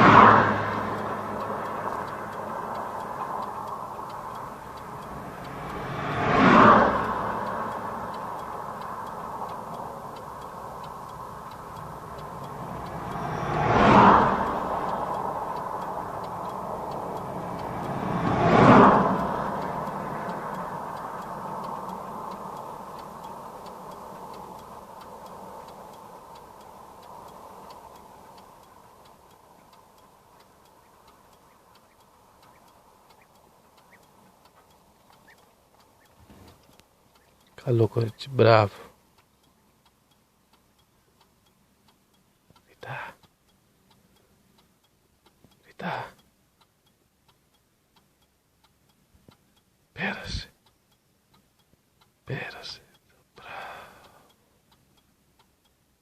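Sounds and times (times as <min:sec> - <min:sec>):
steady background noise: 0:00.0 - 0:56.0
vehicles passing by: 0:00.0 - 0:56.0.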